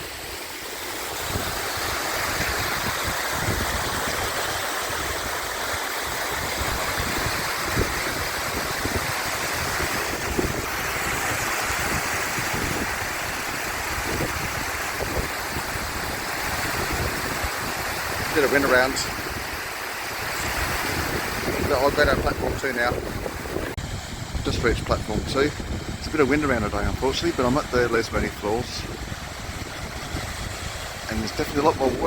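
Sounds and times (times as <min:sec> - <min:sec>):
waterfall rushing: 0:00.0 - 0:32.0
wind on microphone: 0:01.1 - 0:32.0.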